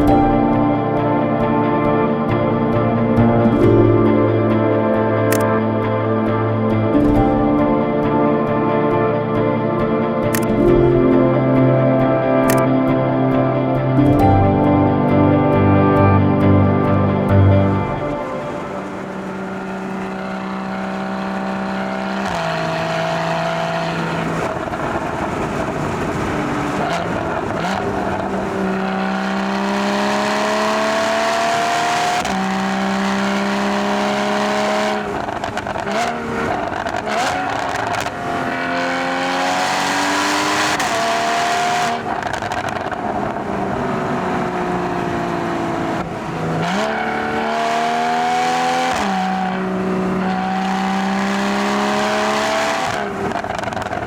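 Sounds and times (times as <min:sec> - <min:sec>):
road noise: 0:00.0 - 0:54.0
car engine revving through gears: 0:17.6 - 0:54.0.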